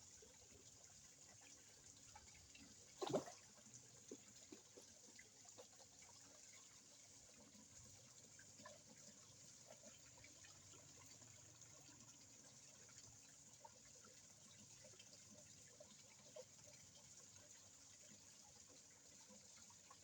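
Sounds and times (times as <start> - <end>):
water trickling in pond: 0.0 - 20.0
water drips and plops: 1.4 - 6.6.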